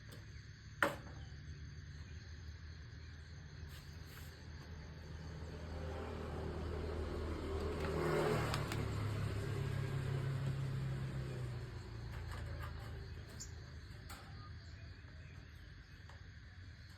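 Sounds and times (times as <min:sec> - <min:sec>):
vehicle engine running: 0:05.1 - 0:16.2.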